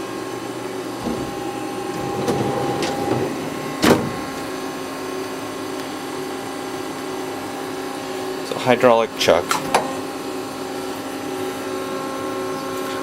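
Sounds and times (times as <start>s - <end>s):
lathe humming: 0.8s - 5.2s.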